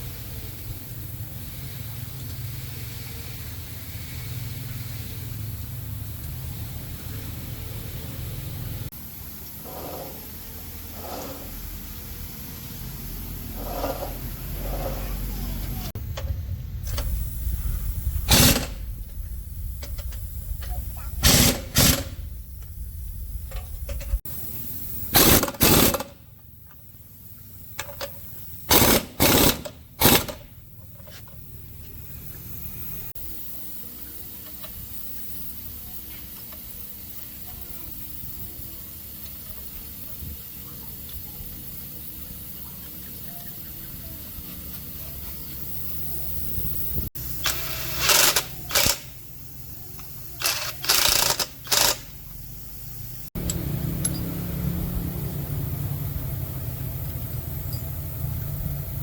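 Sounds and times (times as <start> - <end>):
low workshop hum: 0.0 - 59.0
pneumatic impact wrench rattling: 13.6 - 15.1, 16.1 - 26.3, 27.7 - 31.2, 44.4 - 52.4.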